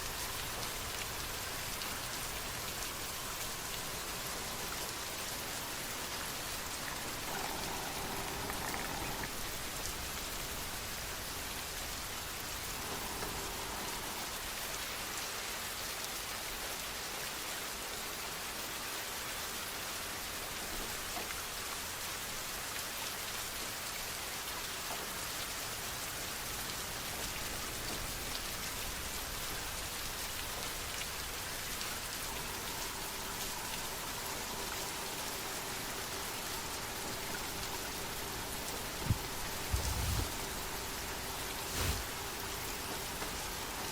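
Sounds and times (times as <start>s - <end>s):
steady rain falling: 0.0s - 43.9s
low rumble: 38.9s - 40.6s.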